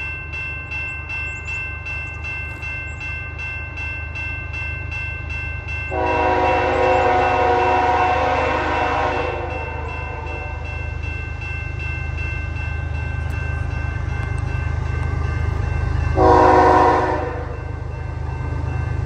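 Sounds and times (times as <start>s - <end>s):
crossing bell ringing: 0.0s - 19.0s
diesel locomotive rumble: 0.0s - 19.0s
locomotive air horn blast: 5.9s - 10.6s, 16.2s - 17.6s.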